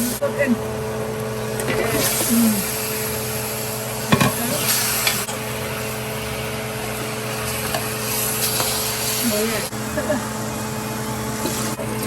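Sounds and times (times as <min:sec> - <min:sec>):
curry paste sizzling in oil: 0:06.9 - 0:09.7.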